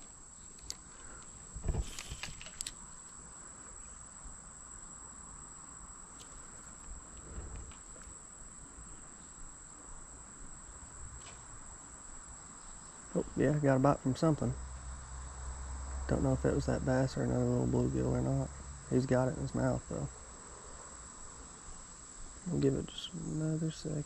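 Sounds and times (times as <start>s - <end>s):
sharp clicks: 0.0s - 2.8s
insects chirring: 0.0s - 24.0s.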